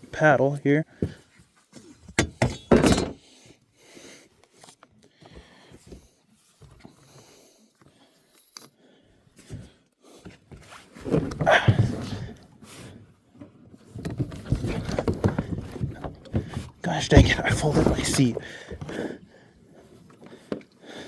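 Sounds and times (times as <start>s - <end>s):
scraping and bumping: 14.0s - 18.4s.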